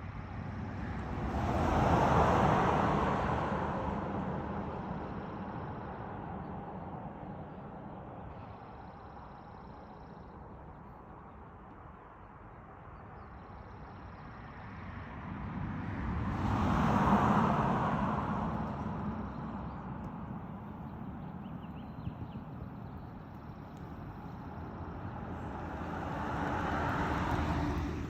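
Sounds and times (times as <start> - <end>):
car driving past: 25.1 - 28.0.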